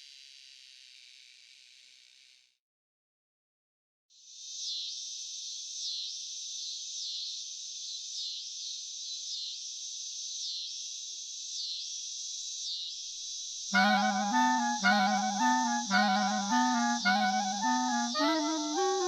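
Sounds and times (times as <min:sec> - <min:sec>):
cicada buzzing: 0:13.7 - 0:19.0
clarinet: 0:13.8 - 0:19.0.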